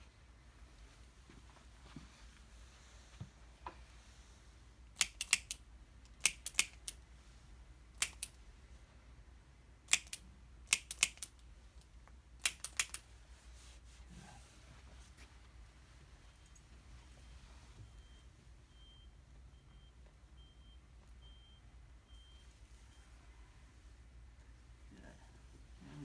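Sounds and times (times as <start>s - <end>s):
sharp light clicks: 5.0s - 7.0s, 8.0s - 8.4s, 9.9s - 11.4s, 12.4s - 13.0s.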